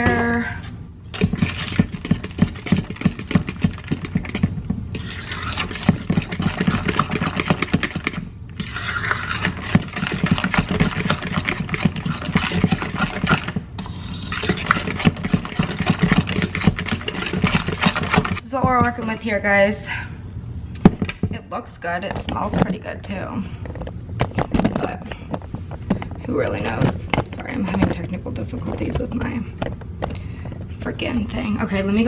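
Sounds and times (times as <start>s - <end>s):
utensil stirring thick batter in bowl: 1.2s - 18.4s.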